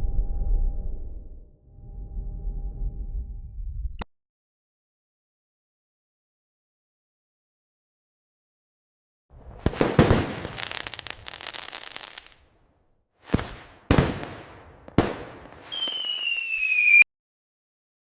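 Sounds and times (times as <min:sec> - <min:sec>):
firework bangs: 0:09.4 - 0:12.5, 0:13.2 - 0:17.0
firework crackling: 0:09.4 - 0:12.5, 0:13.3 - 0:17.0
falling firework whistle: 0:15.6 - 0:17.1.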